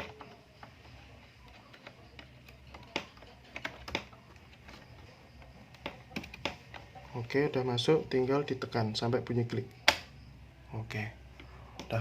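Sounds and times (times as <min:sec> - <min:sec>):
small plastic and metal clicks: 0:00.0 - 0:06.9.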